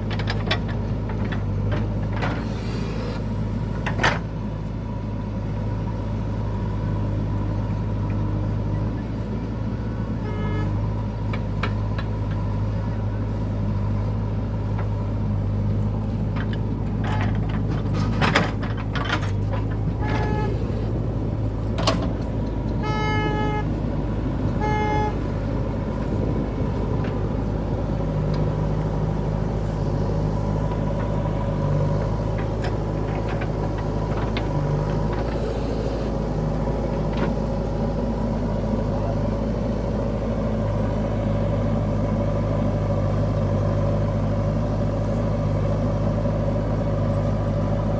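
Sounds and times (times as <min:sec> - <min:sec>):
heavy machinery diesel engine: 0:00.0 - 0:47.9
vehicle horn toots: 0:10.2 - 0:10.8, 0:20.0 - 0:20.9, 0:22.8 - 0:23.8, 0:24.5 - 0:25.4.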